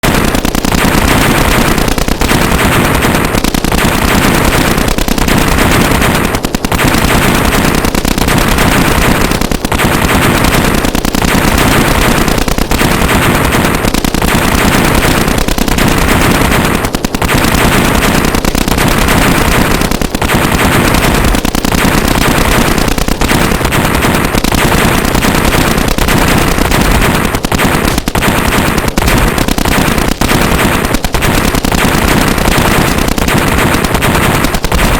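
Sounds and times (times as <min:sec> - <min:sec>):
rapid machine-gun fire: 0:00.0 - 0:34.9.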